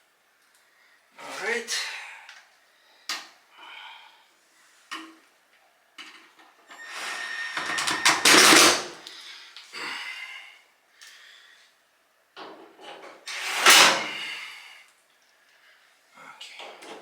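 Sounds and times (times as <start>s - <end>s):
metal panel scraping: 6.7s - 9.0s.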